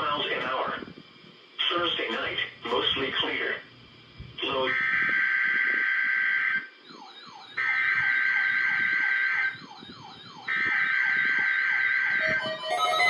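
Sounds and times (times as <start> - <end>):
buzzy digital tone bursts: 12.2 - 13.0.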